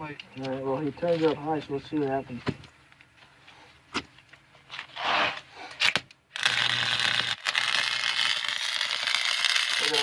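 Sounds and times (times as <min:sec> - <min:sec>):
welder arc crackling: 0:05.9 - 0:10.0.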